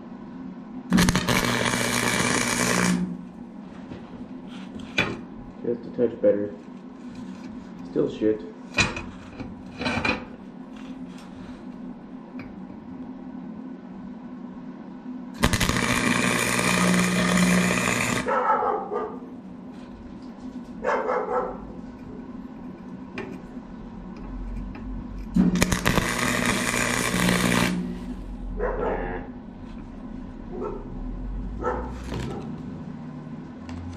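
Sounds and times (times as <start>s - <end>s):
electrical hum: 0.0s - 33.9s
welder arc crackling: 0.9s - 3.5s, 15.4s - 18.3s, 21.8s - 28.4s, 31.9s - 32.7s.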